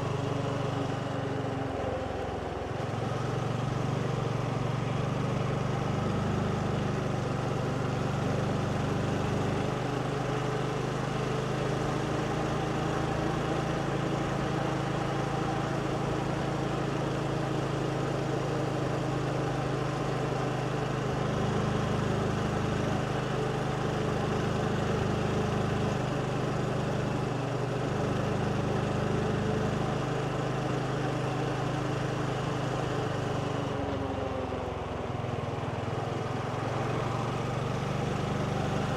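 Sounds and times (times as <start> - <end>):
motorbike engine running: 35.6 - 38.9.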